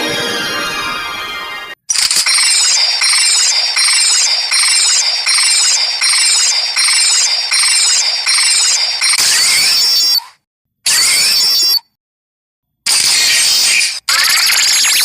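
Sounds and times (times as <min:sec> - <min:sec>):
high screechy electronic loop: 0:01.9 - 0:10.2, 0:12.9 - 0:15.0.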